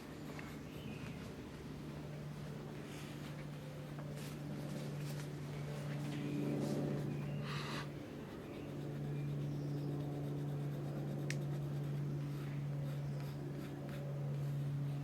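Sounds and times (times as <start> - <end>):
low electrical hum: 0.0 - 15.0
pencil scratching on paper: 8.3 - 15.0.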